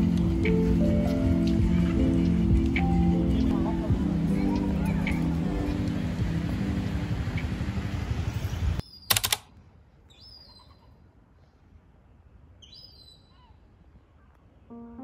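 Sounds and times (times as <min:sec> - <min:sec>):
bird chirping: 0:08.4 - 0:09.2, 0:10.1 - 0:11.0, 0:12.6 - 0:13.6.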